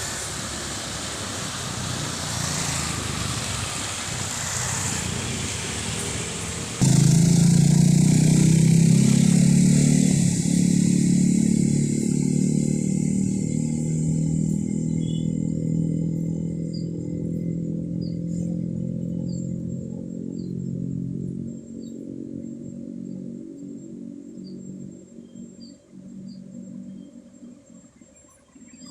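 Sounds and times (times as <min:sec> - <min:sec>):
heavy diesel engine running: 0:00.0 - 0:09.6.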